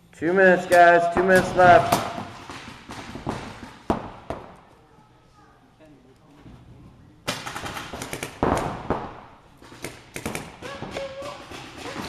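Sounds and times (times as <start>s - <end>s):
paintball markers firing: 0.7s - 4.7s, 7.3s - 12.0s.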